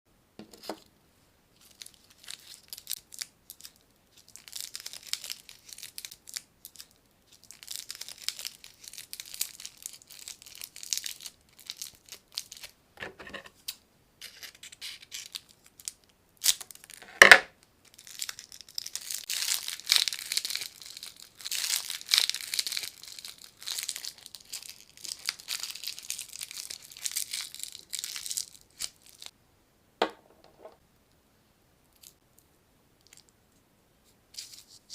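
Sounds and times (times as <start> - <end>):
plastic wrappers crinkling and tearing: 1.6 - 12.7, 17.9 - 29.3.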